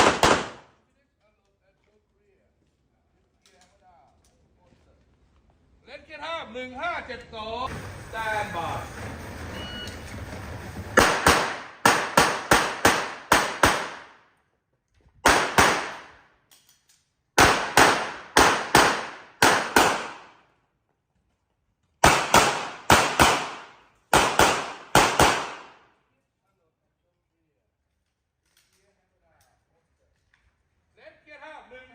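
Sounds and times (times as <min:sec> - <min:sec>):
handgun shots in quick pairs: 0:00.0 - 0:00.7, 0:11.0 - 0:14.3, 0:15.2 - 0:16.7, 0:17.4 - 0:20.4, 0:22.0 - 0:25.8.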